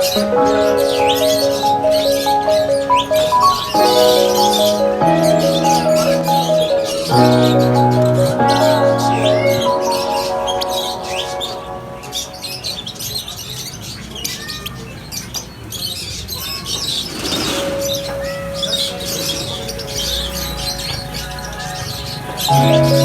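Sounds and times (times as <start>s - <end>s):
background music: 0.0s - 12.9s, 17.8s - 23.0s
partridges chirping and calling: 0.0s - 23.0s.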